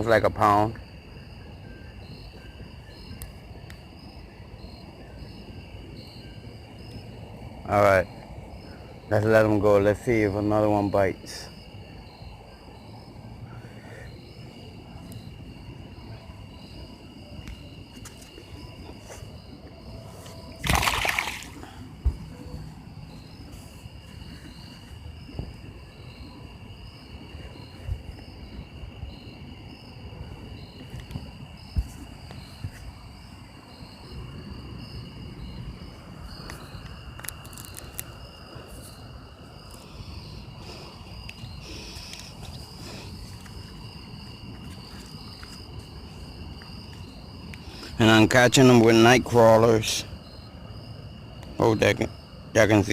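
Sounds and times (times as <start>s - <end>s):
insects chirring: 0.0s - 52.9s
loud splash in water: 20.6s - 21.6s.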